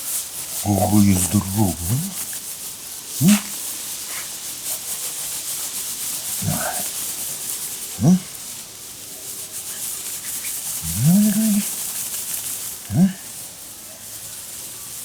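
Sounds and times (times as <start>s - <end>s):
man grunting: 0.7s - 2.2s, 3.2s - 3.6s, 6.4s - 6.9s, 8.0s - 8.2s, 10.8s - 11.7s, 12.9s - 13.2s.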